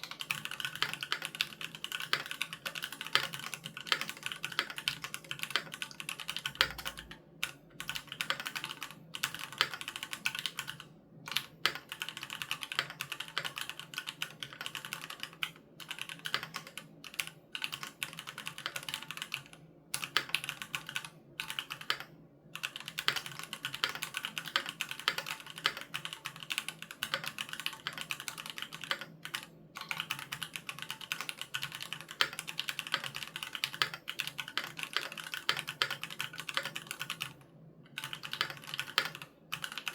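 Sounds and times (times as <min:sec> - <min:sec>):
fast typing on mechanical keyboard: 0:00.0 - 0:39.9.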